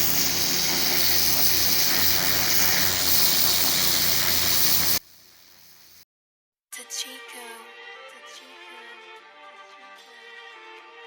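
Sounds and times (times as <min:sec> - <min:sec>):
pressure washer engine hum: 0:00.0 - 0:05.0
water spray hiss: 0:00.0 - 0:06.0.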